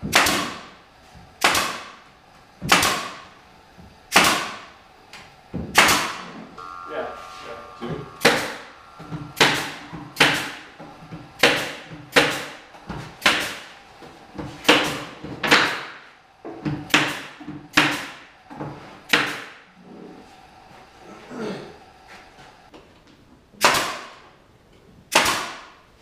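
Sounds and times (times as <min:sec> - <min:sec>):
nail gun firing into wood: 0:00.1 - 0:00.7, 0:01.4 - 0:01.9, 0:02.7 - 0:03.2, 0:04.1 - 0:04.6, 0:05.8 - 0:06.2, 0:23.6 - 0:24.2, 0:25.1 - 0:25.7.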